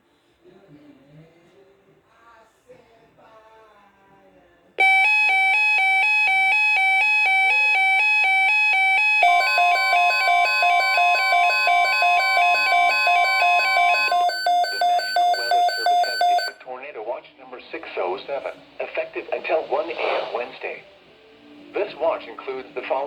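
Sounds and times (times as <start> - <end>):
steady warning alarm tone: 4.8 - 16.6
two-pitch electronic beeping: 4.8 - 16.6.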